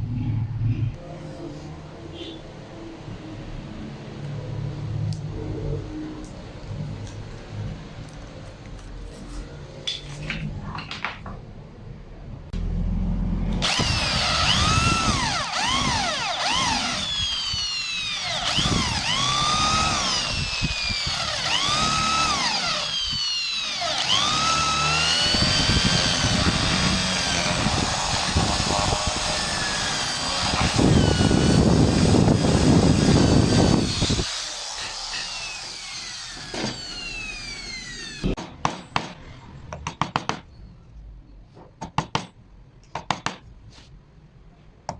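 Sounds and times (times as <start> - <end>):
power tool cutting wood: 13.5 - 38.4.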